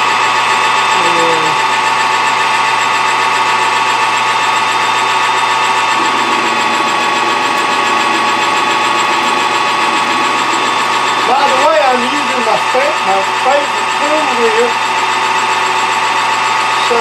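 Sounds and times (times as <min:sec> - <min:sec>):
metal lathe whining: 0:00.0 - 0:17.0
low hum: 0:05.9 - 0:14.0.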